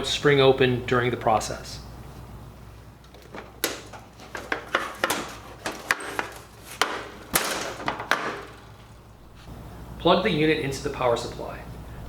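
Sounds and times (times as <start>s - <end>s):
metal knocks of sandwich grill: 3.1s - 9.0s.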